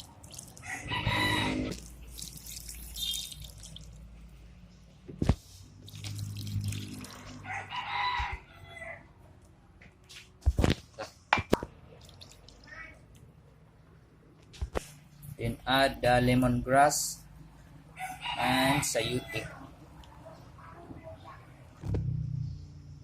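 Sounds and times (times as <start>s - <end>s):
rooster crowing: 0.6s - 1.8s, 7.2s - 9.2s, 17.9s - 19.6s.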